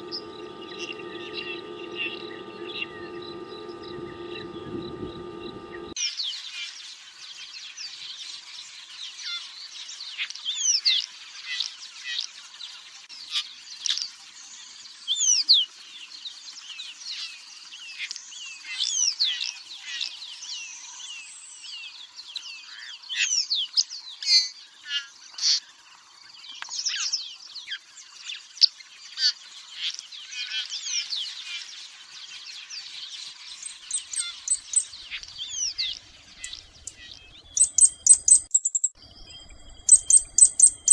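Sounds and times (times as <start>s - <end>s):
songbirds chirping and singing: 0.0s - 6.5s, 29.9s - 40.9s.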